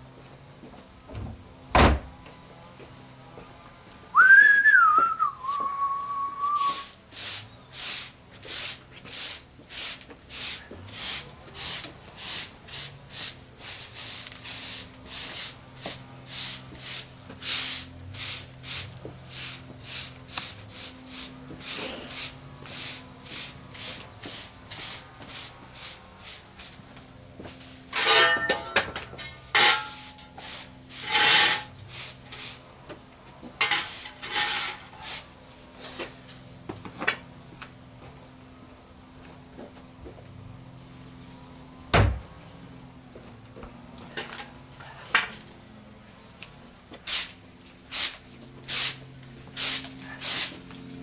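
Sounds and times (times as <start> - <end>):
whistled note sliding down: 4.2 - 6.9
brush sweeping clippings: 5.4 - 28.4, 29.4 - 32.7, 33.6 - 36.4, 47.0 - 51.0.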